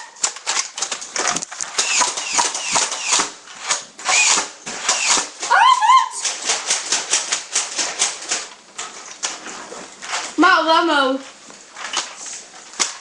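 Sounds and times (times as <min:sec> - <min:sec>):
toy blasters clicking: 0:00.2 - 0:05.3
high-pitched cry: 0:05.4 - 0:06.3.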